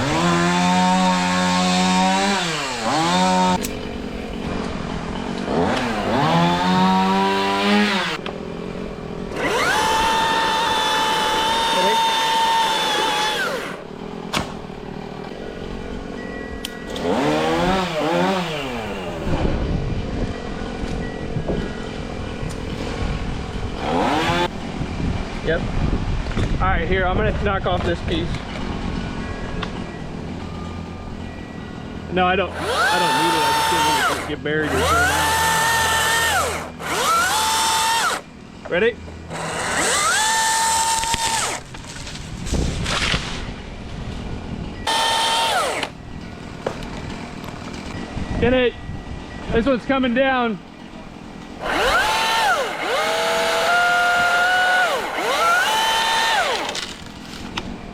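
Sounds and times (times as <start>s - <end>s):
chainsaw revving: 0.0s - 3.8s, 5.2s - 15.2s, 16.9s - 19.4s, 23.8s - 24.5s, 32.5s - 38.2s, 39.3s - 41.7s, 44.9s - 46.0s, 51.6s - 57.0s.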